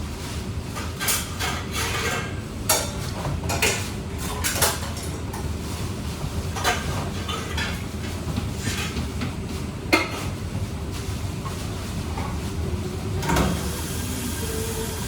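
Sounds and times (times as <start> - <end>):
utensils and dishes clattering: 0.8 - 5.5, 6.4 - 9.3.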